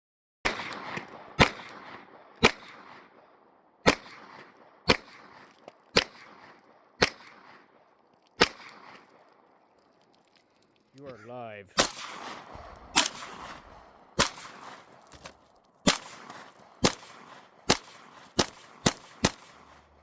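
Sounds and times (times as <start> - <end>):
gunshots with echo: 0.4 - 7.8, 8.4 - 9.3, 11.7 - 15.2, 15.8 - 20.0.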